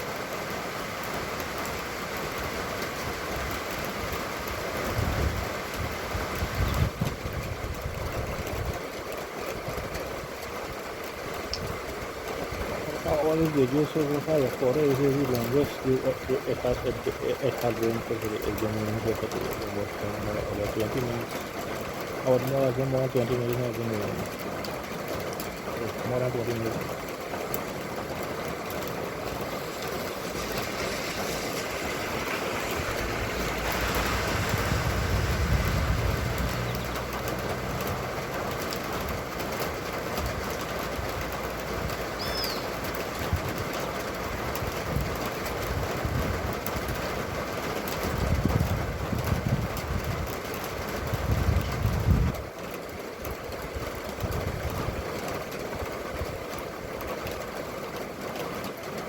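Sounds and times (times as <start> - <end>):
rain: 0.0 - 59.0
wind: 0.0 - 59.0
vehicles passing: 29.2 - 43.2.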